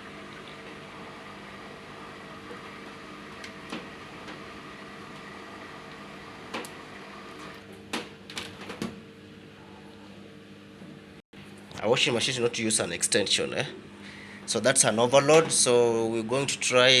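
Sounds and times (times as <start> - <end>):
washing machines humming: 0.0 - 17.0.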